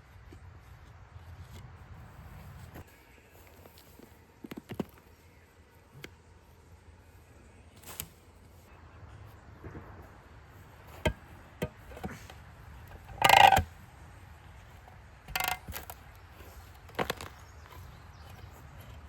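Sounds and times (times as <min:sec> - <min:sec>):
shovel knocks: 0:15.3 - 0:16.0.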